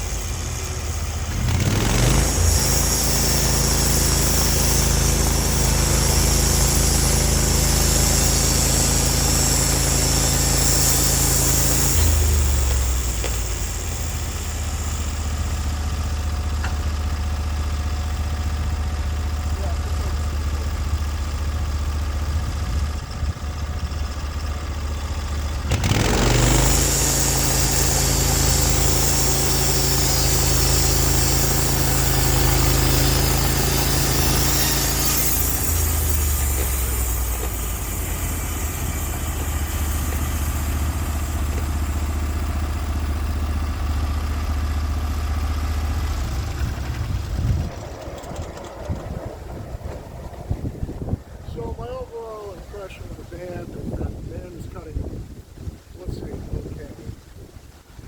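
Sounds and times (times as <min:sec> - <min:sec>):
band blade cutting log: 0:00.0 - 0:15.3, 0:25.5 - 0:43.3
gas engine running: 0:00.0 - 0:54.6.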